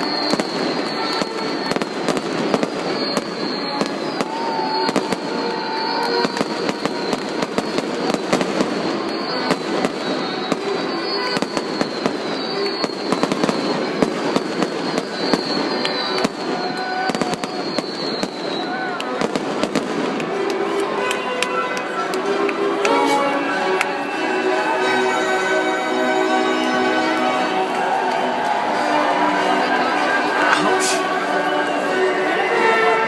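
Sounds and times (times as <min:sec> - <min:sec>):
falling whistles: 0:00.0 - 0:19.4
fireworks pops and bangs: 0:00.0 - 0:23.2.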